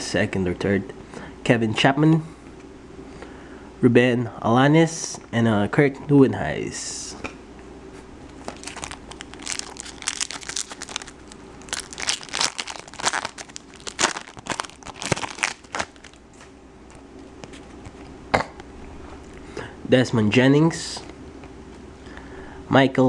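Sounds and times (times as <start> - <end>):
foil wrapper tearing and crinkling: 8.4 - 16.5.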